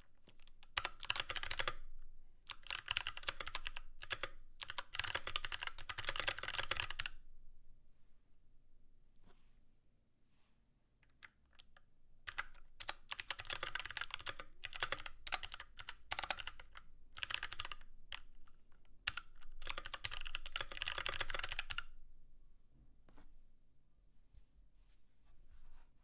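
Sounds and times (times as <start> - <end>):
mechanical keyboard typing: 0.2 - 1.8, 2.5 - 7.1, 11.2 - 21.9.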